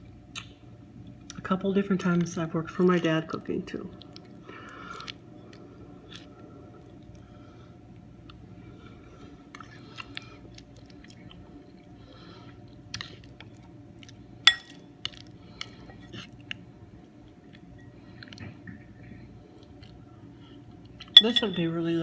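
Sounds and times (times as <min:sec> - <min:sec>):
steady low hum: 0:00.0 - 0:22.0
metal utensil clinking against bowl: 0:14.5 - 0:14.8, 0:21.2 - 0:21.6.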